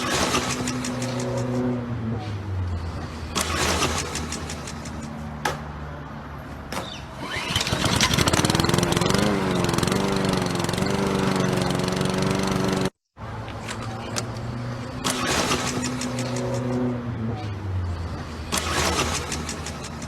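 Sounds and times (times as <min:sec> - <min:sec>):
lawn mower engine: 0:07.1 - 0:13.0.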